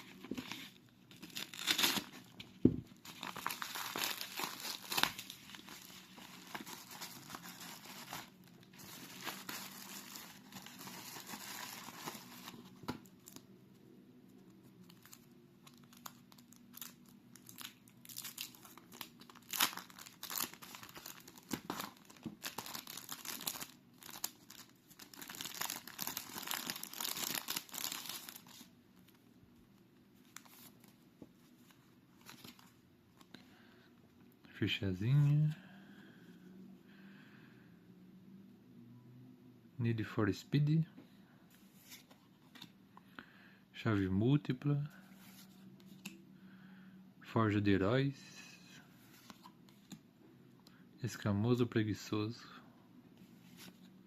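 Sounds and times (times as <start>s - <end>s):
packaging crinkling and tearing: 0.3s - 2.4s, 3.0s - 13.4s, 14.8s - 28.7s.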